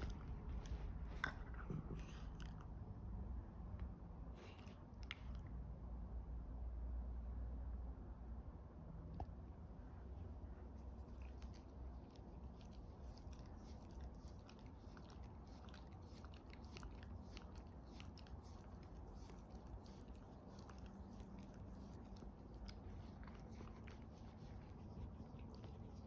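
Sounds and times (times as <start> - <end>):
dog mouth clicking: 11.1 - 26.0.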